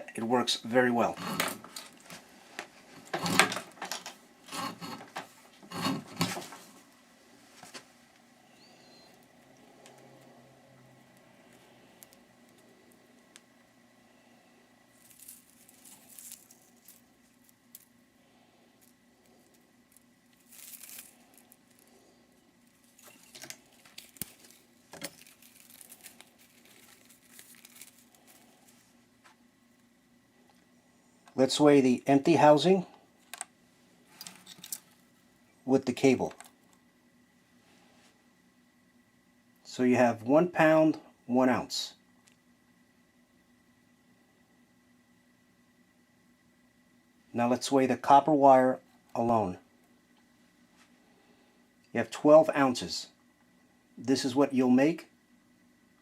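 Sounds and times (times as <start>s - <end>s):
crinkling of wire insulation: 1.0s - 10.3s, 14.8s - 29.9s, 33.2s - 35.3s
cable scraping through wire stripper: 1.1s - 2.0s, 3.0s - 6.6s.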